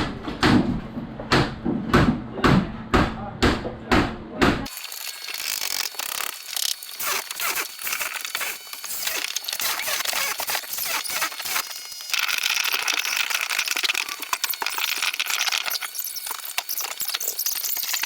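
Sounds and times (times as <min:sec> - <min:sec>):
building materials tearing and crunching: 0:04.7 - 0:18.0.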